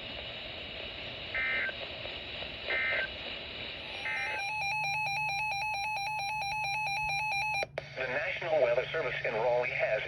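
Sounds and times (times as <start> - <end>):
radio hiss: 0.0 - 4.4
warbling data tone bursts: 3.8 - 7.6
two-tone data signal: 3.9 - 7.6.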